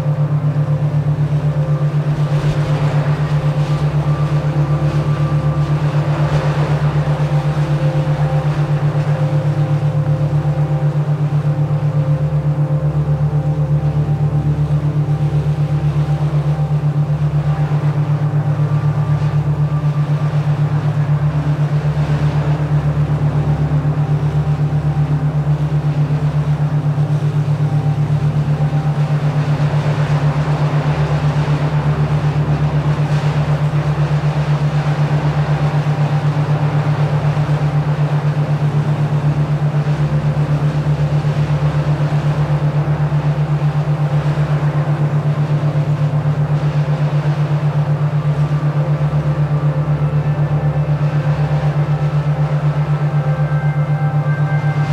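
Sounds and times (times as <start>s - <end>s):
pulsing electronic drone: 0.0s - 54.9s
soft wash of noise: 0.0s - 54.9s
held synth tones: 47.9s - 54.9s.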